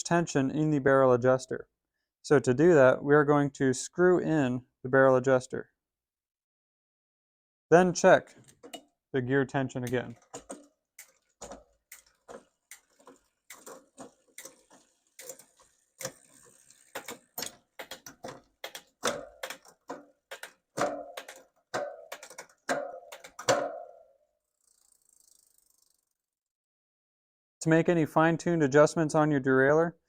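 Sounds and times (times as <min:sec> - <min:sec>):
bicycle derailleur clicking: 0:08.2 - 0:08.9, 0:09.8 - 0:26.4.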